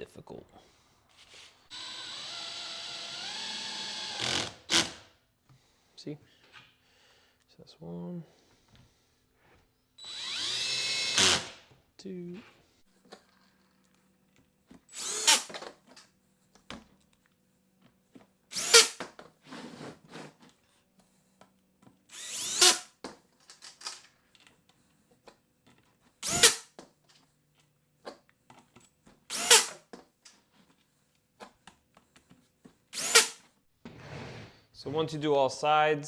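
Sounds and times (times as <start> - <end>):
power drill driving screws: 1.7 - 5.1, 10.0 - 11.7, 14.9 - 15.7, 18.5 - 19.2, 22.1 - 24.0, 26.2 - 26.8, 29.3 - 29.9, 33.0 - 33.4.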